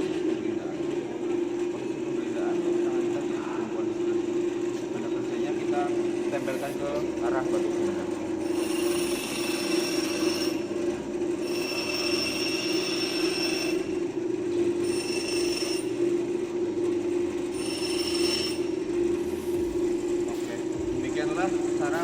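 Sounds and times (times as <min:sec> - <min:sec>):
bench grinder humming: 0:00.0 - 0:22.0
grinding wheel screech: 0:05.4 - 0:16.3, 0:17.3 - 0:22.0.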